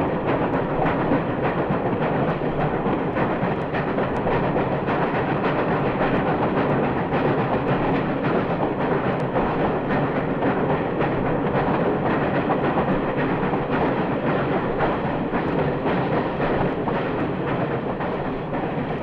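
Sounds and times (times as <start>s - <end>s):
steam locomotive working: 0.0s - 19.0s.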